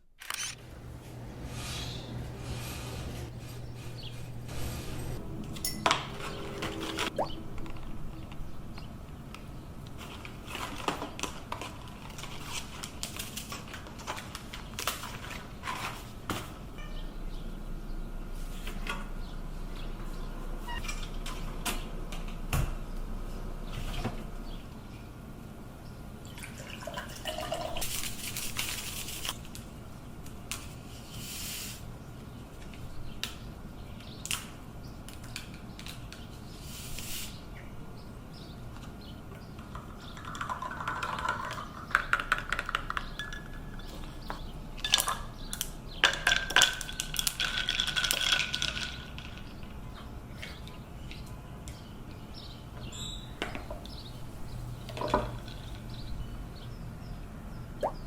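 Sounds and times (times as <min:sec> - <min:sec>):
dishes and cutlery clinking: 0:03.9 - 0:07.1
liquid pouring: 0:26.5 - 0:27.8.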